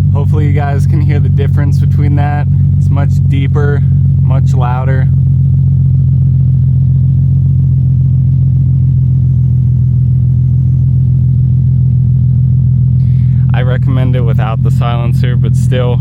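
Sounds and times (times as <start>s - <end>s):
engine idling with deep drone: 0.0s - 16.0s.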